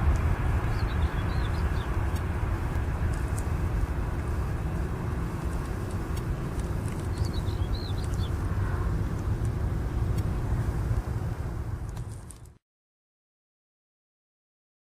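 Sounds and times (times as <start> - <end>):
jet engines rumbling: 0.0 - 12.5
bird chirp: 0.6 - 2.0, 7.0 - 8.4.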